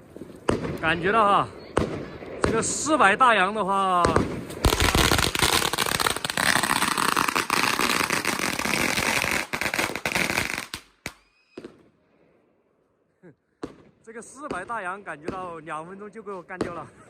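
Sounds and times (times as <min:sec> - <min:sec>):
firework bangs and crackling: 0:00.0 - 0:12.3, 0:13.6 - 0:17.0
scattered firework pops: 0:00.1 - 0:01.0, 0:01.6 - 0:02.7, 0:04.0 - 0:11.9, 0:13.6 - 0:15.4.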